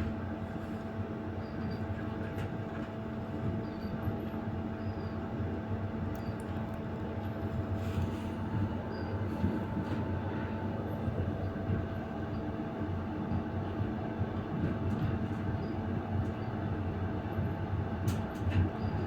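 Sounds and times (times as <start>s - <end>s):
train wheels rumbling on rails: 0.0s - 19.0s
steady hum: 6.0s - 12.9s.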